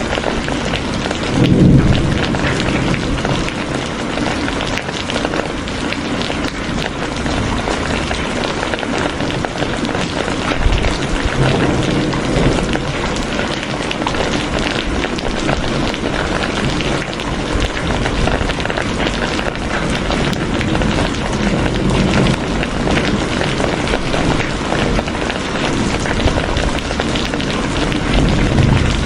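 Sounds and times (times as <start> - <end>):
heavy rain falling: 0.0 - 29.0.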